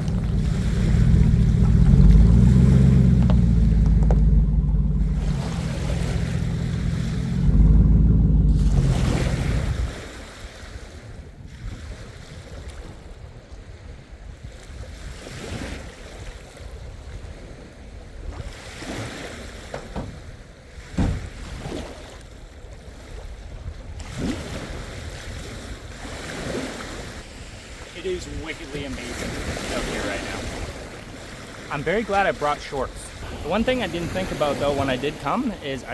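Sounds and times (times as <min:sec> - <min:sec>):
pickup engine revving: 0:00.0 - 0:10.1, 0:27.8 - 0:35.9
surf washing on beach: 0:00.0 - 0:13.2, 0:22.8 - 0:35.9
wind buffeting microphone: 0:00.0 - 0:35.9.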